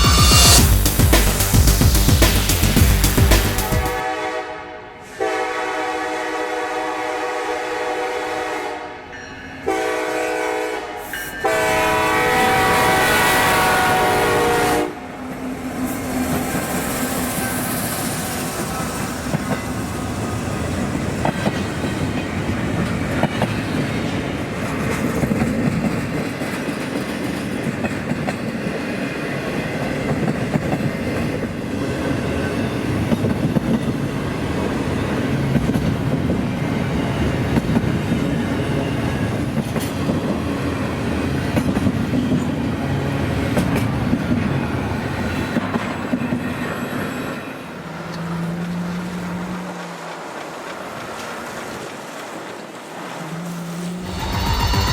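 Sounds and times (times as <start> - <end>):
train wheels rumbling and rattling: 11.5 - 54.9.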